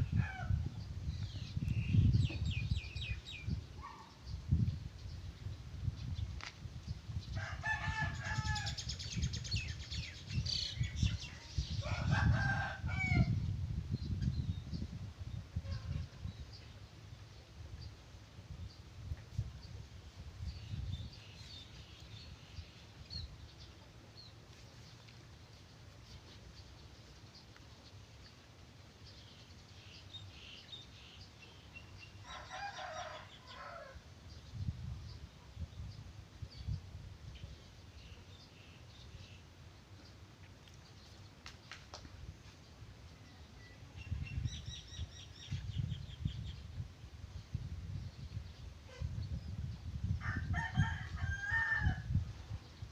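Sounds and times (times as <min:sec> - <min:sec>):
rooster crowing: 0:07.4 - 0:08.8, 0:11.8 - 0:13.4, 0:32.2 - 0:34.0, 0:50.2 - 0:52.1.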